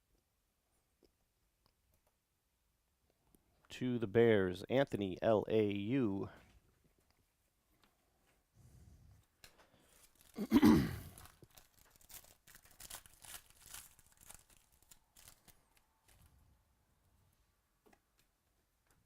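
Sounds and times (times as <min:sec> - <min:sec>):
foil wrapper crinkling: 0:09.4 - 0:16.4
foil wrapper ripping: 0:09.8 - 0:16.3.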